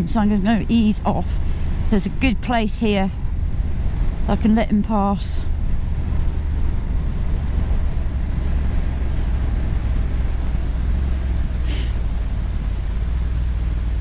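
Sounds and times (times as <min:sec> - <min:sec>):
motorcycle engine rumble: 0:00.0 - 0:14.0
brief hiss: 0:11.6 - 0:12.0.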